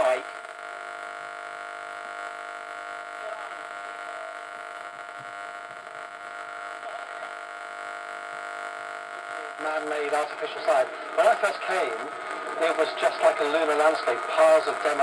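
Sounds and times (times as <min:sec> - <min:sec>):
broadcast speech: 0:00.0 - 0:00.3, 0:09.2 - 0:15.0
radio loudspeaker hum: 0:00.0 - 0:15.0.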